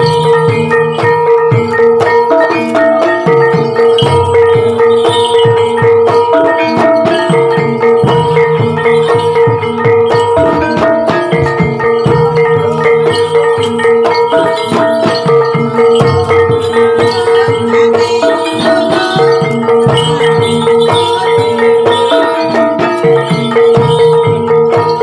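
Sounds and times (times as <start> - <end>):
drum strokes: 0.0 - 25.0
metal mallet instruments melody: 0.0 - 25.0.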